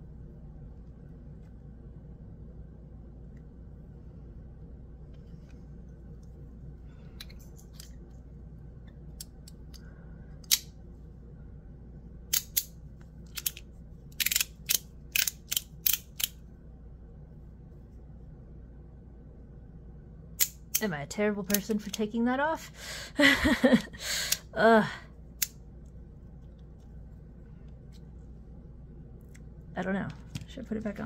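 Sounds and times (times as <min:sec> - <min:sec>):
metallic clicks of fidget slider: 0:14.2 - 0:16.4.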